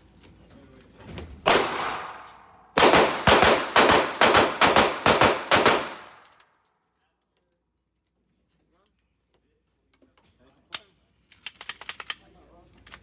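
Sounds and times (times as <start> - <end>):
gunshot with long echo: 1.5 - 6.2
rapid gunfire: 1.5 - 6.2.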